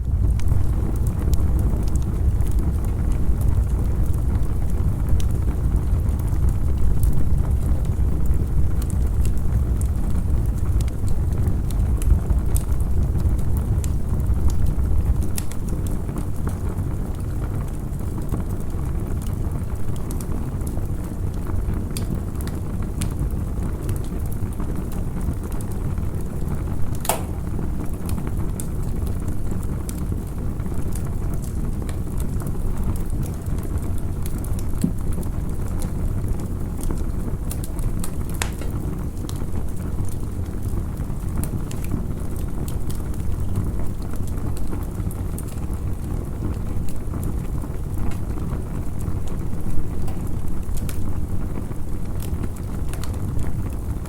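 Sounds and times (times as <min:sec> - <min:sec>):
steady low rumble: 0:00.0 - 0:15.2
campfire crackling and popping: 0:00.0 - 0:54.0.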